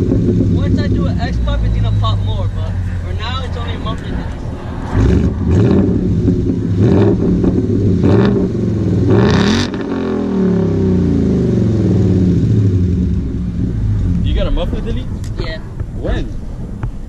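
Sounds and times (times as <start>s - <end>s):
car engine revving: 0.0s - 17.0s
sharp exhaust pops: 13.0s - 17.0s.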